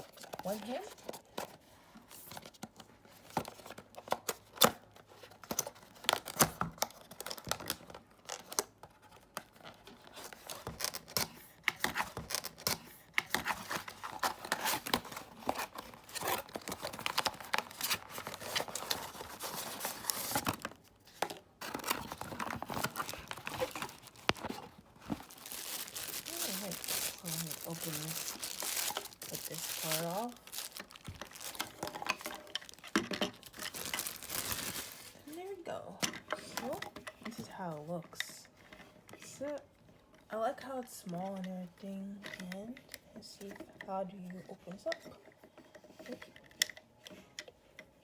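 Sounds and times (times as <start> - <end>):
packaging crinkling and tearing: 4.5 - 20.9, 21.6 - 35.4.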